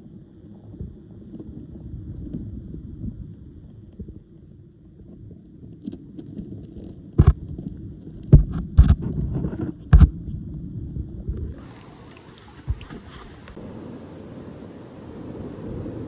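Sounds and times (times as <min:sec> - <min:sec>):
underwater rumble: 0:00.0 - 0:16.0
loud underwater knocks: 0:11.6 - 0:13.6.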